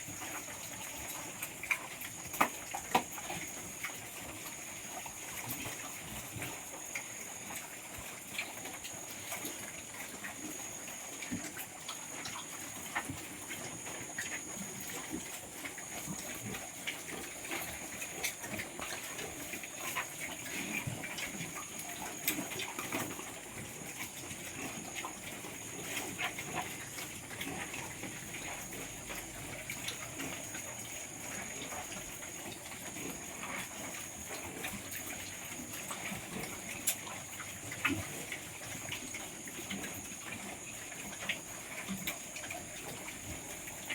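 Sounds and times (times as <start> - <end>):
pigs eating and moving: 0.0 - 43.9
soft animal sounds: 0.0 - 43.9.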